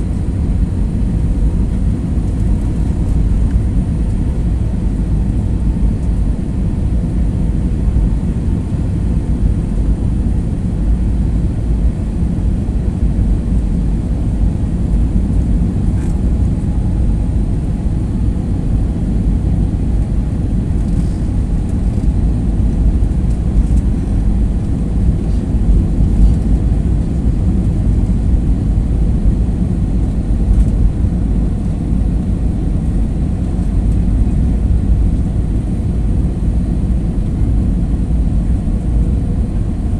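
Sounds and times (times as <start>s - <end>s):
airliner cabin rumble: 0.0s - 39.9s.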